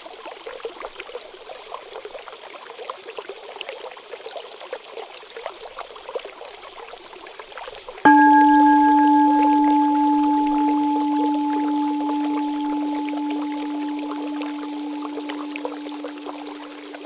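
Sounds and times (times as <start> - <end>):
water running and trickling: 5.5 - 17.0
water drops splashing: 8.1 - 17.0.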